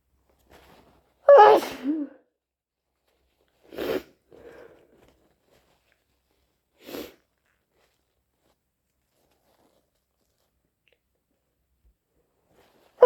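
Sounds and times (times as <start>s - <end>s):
person sneezing loudly: 1.3s - 2.2s.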